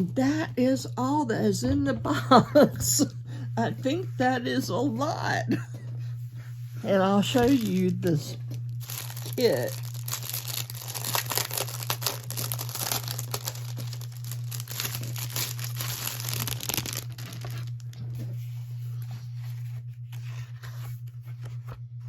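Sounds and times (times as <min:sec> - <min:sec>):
low electrical hum: 0:00.0 - 0:22.0
paper and plastic crinkling: 0:06.8 - 0:21.7.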